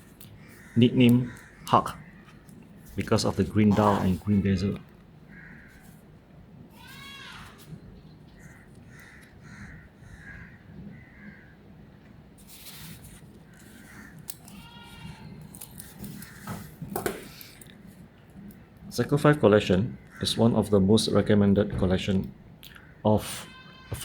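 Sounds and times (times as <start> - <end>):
animal calling: 3.4 - 5.7.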